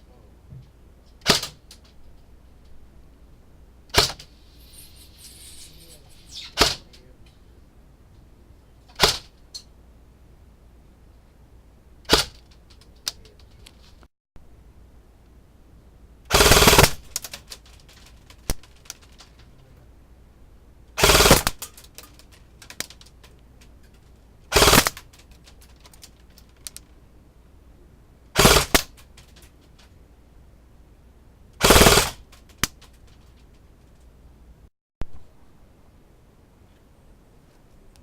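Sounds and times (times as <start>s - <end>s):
airsoft gun full-auto bursts: 16.3s - 17.4s, 21.0s - 21.7s, 24.5s - 25.0s, 28.4s - 29.0s, 31.6s - 32.3s
small clicks: 24.9s - 27.0s.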